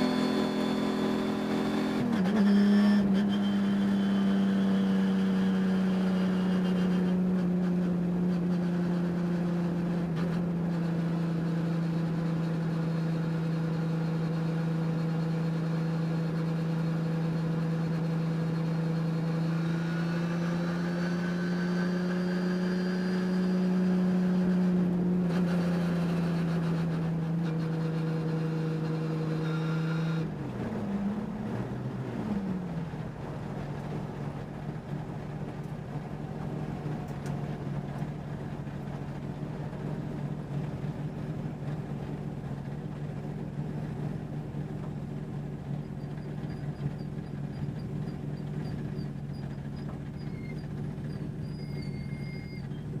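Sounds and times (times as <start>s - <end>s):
race engine revving: 0.0s - 7.4s.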